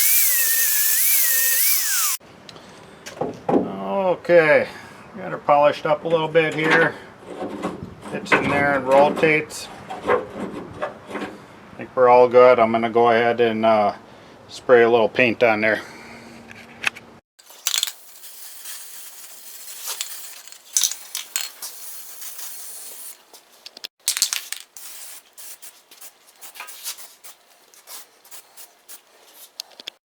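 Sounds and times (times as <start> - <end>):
spray paint can hissing: 0.0 - 2.2, 17.4 - 23.3, 24.1 - 29.0
sharp clicks and rattles: 17.4 - 22.4, 23.7 - 24.8.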